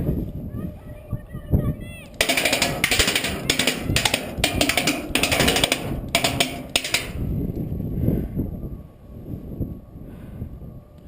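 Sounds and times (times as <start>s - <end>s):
wind rumble on microphone: 0.0s - 11.0s
airsoft gun firing bursts: 2.2s - 7.3s.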